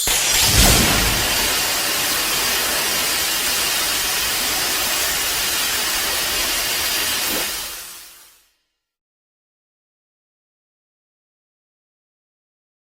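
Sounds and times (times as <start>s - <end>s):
loud rushing hiss: 0.0s - 8.4s.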